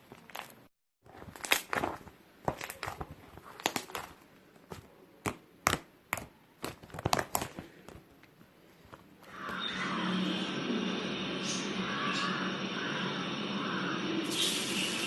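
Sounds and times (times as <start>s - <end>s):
slime popping and crackling: 0.0s - 8.2s.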